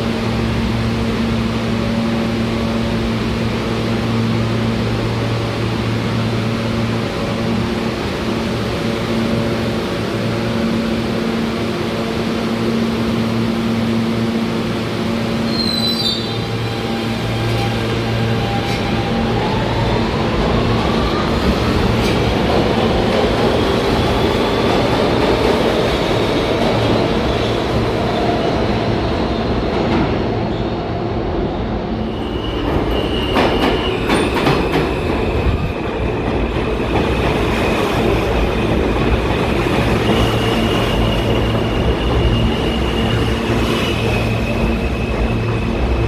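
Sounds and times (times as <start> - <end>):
subway train running: 0.0 - 46.0
wheel squeal: 15.5 - 17.8, 39.9 - 46.0.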